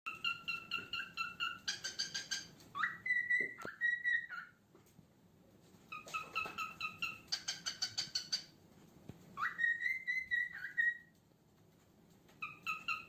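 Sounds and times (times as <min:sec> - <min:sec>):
cockatiel whistling: 0:00.1 - 0:04.6, 0:05.9 - 0:08.5, 0:09.4 - 0:11.1, 0:12.4 - 0:13.0.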